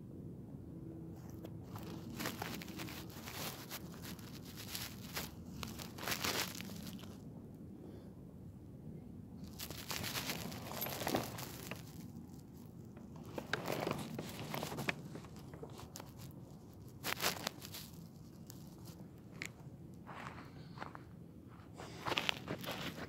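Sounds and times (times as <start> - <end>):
shoes crunching on rock and grit: 9.5 - 12.0, 21.9 - 23.0.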